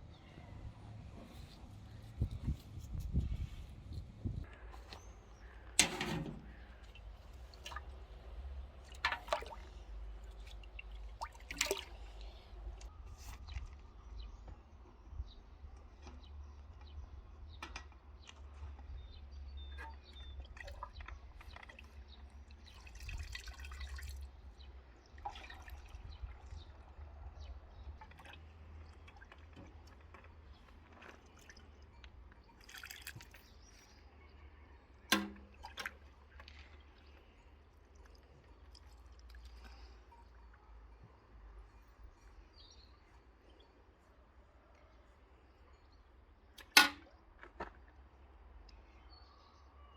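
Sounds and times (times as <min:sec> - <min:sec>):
water dripping and trickling: 0:06.4 - 0:13.8, 0:19.8 - 0:27.2, 0:28.0 - 0:34.0, 0:35.1 - 0:42.4.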